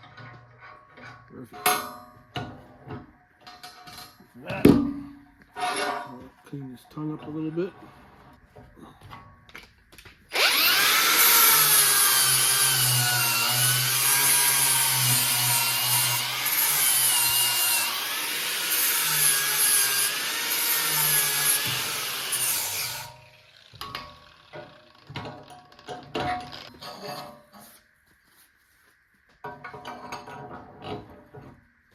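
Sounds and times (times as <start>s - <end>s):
grinder whining on metal: 10.3s - 25.2s.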